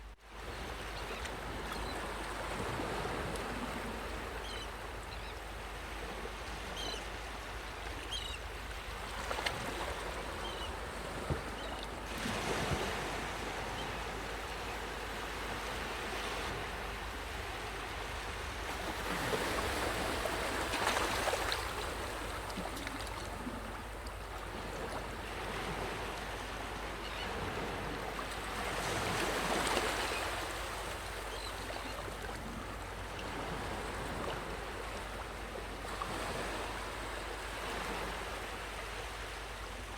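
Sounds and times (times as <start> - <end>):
sea waves breaking on sand: 8.7 - 26.8.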